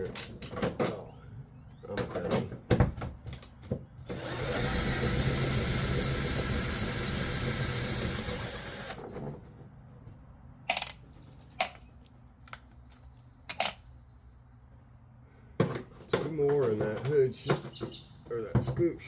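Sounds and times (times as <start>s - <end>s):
power drill running: 4.1s - 9.1s.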